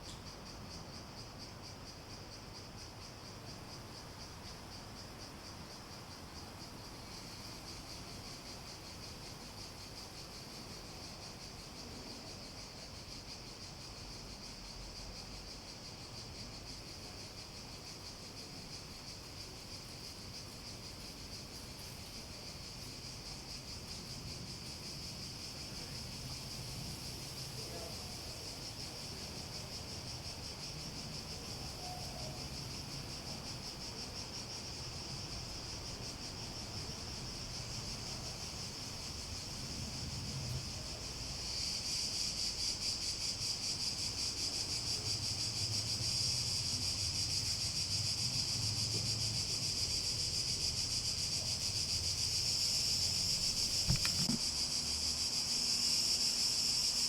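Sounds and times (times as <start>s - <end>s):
cicadas buzzing: 0.0s - 57.0s.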